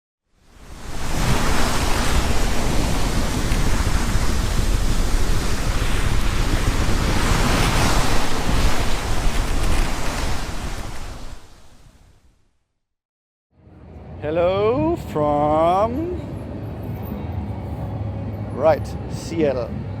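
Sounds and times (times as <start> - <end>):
waves: 0.4 - 12.3, 14.2 - 16.4
wind buffeting microphone: 0.5 - 12.2
wind rushing: 0.5 - 12.3.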